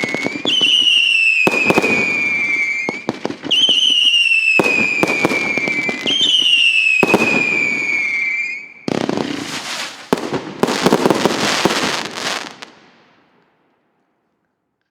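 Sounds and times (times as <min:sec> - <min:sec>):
fireworks whistle falling in pitch: 0:00.0 - 0:08.8
fireworks bangs: 0:00.0 - 0:13.7
fireworks crackling and pops: 0:00.0 - 0:13.8.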